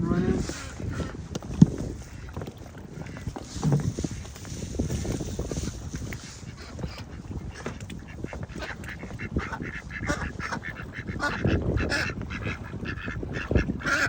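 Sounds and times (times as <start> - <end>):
low rumbling noise: 0.0 - 2.0
ducks quacking: 0.0 - 14.0.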